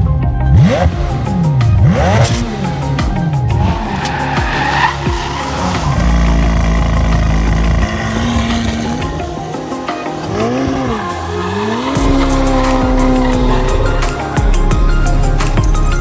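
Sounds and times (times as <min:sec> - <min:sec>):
car engines revving: 0:00.0 - 0:16.0.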